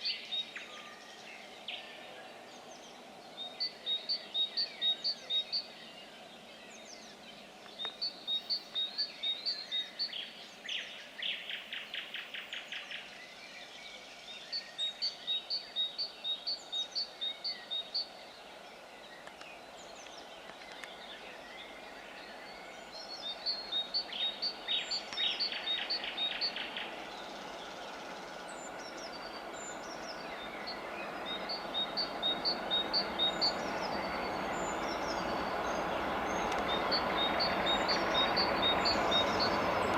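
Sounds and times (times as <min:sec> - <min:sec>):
diesel train approaching: 0:00.0 - 0:05.8, 0:19.6 - 0:39.9
songbird singing: 0:00.0 - 0:39.9.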